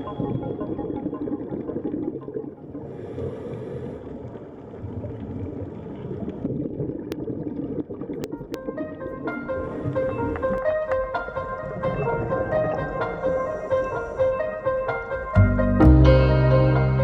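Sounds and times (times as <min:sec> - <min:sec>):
ocean water rumbling wash: 0:08.6 - 0:15.4.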